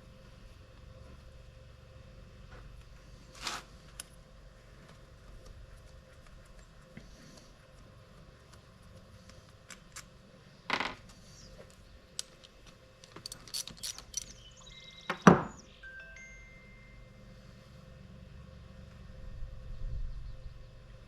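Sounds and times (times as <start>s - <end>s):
metal parts clinking: 12.2s - 14.6s.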